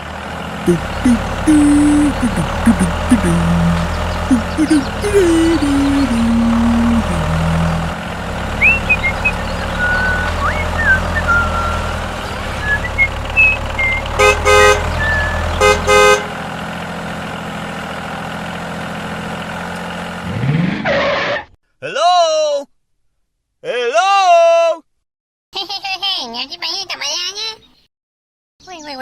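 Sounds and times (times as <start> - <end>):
vehicle engine running: 0.0 - 20.8
horn honking: 8.6 - 16.6.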